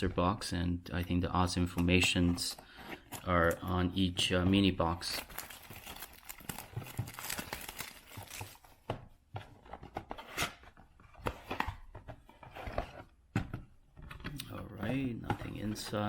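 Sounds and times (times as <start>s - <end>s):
cardboard packaging tearing and rustling: 5.0s - 8.8s.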